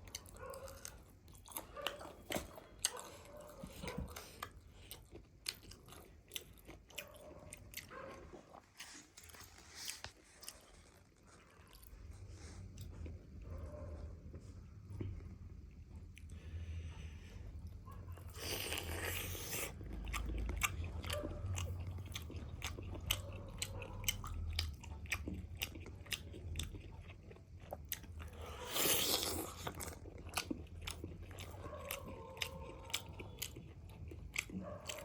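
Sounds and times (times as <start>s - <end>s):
crunching fried chicken: 18.2s - 35.0s.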